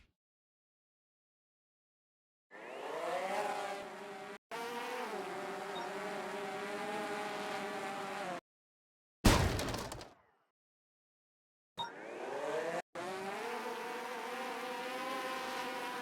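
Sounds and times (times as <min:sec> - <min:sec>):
drone motors buzzing: 0:02.5 - 0:08.4, 0:11.8 - 0:16.0.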